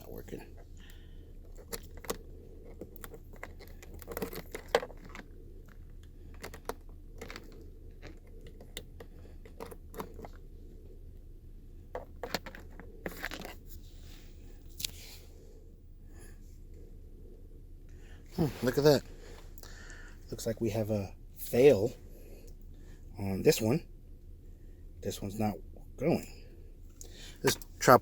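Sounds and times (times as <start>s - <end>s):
cable handling taps and scraping: 0.0s - 10.5s, 11.9s - 15.1s.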